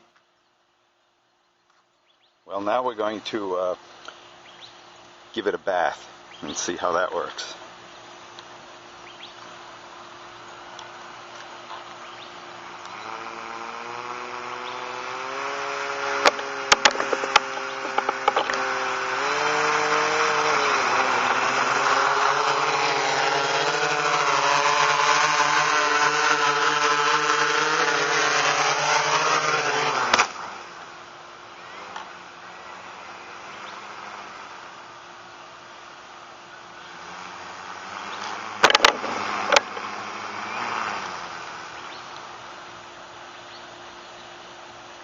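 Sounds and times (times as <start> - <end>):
drone motors and propellers whining: 8.0 - 43.0.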